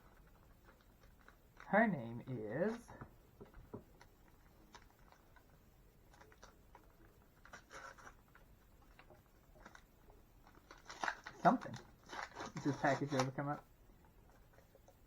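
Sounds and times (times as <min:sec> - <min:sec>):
packaging rustling and tapping: 0:02.6 - 0:05.5, 0:06.1 - 0:13.6.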